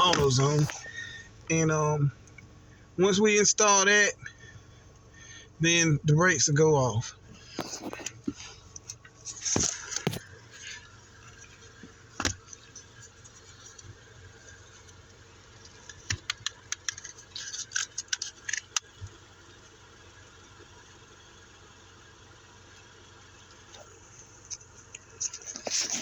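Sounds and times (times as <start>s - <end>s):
handling clicks and rustles: 0.0s - 3.0s, 7.0s - 19.8s, 23.4s - 26.0s
faint low hum: 0.0s - 26.0s.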